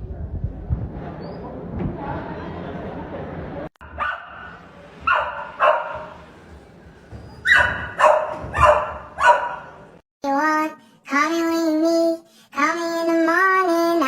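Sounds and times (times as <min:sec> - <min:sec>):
dog barking: 0:03.8 - 0:06.2, 0:07.4 - 0:09.8.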